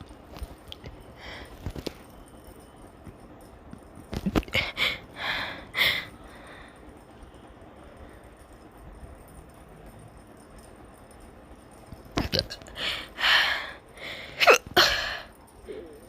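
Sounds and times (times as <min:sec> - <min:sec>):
person hiccuping: 0:12.2 - 0:12.8, 0:14.4 - 0:16.0.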